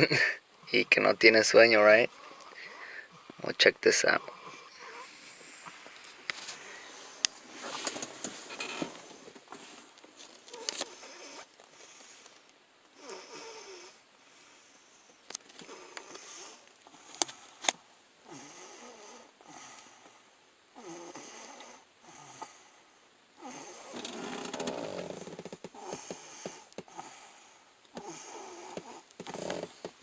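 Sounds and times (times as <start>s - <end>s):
person snoring: 23.4s - 27.2s.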